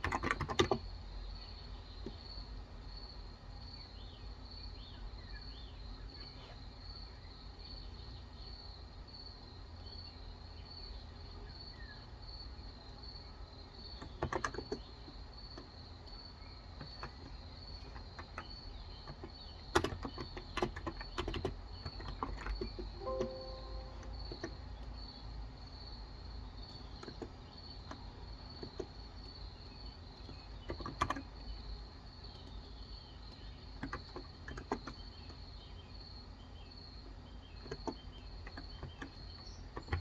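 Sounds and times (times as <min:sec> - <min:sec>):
high pulsing chirp: 0:23.0 - 0:24.5.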